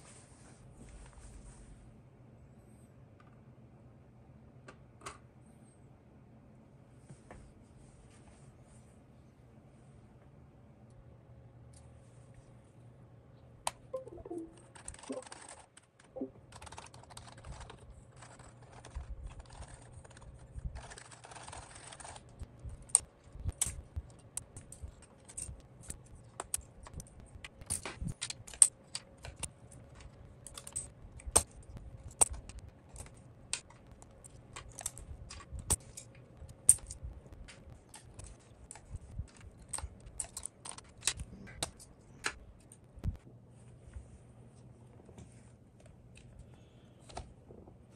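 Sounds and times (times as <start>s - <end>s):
keyboard keys clicking: 13.7s - 20.2s.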